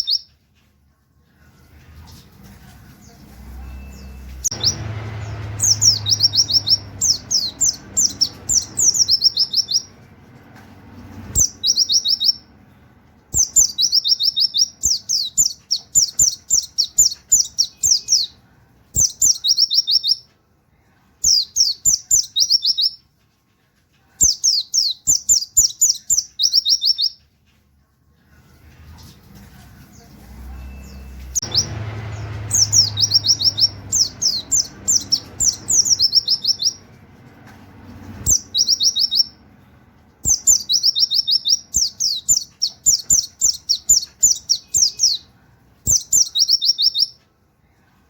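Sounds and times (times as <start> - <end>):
bird singing high rapid notes: 0.0 - 0.4, 3.0 - 10.0, 11.1 - 12.7, 13.3 - 18.4, 19.0 - 20.3, 21.2 - 23.0, 24.2 - 27.2, 30.6 - 37.0, 38.0 - 39.5, 40.2 - 45.3, 45.9 - 47.2.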